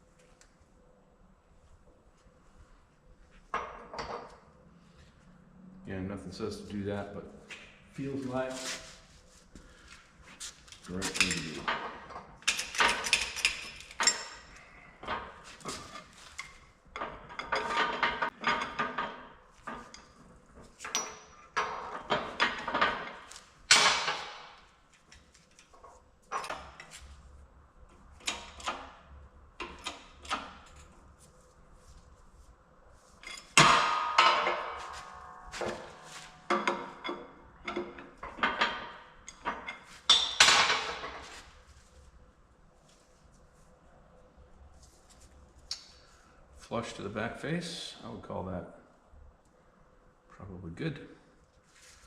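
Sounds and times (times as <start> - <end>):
metal tools clanking and scraping: 10.8 - 24.4, 33.2 - 41.5.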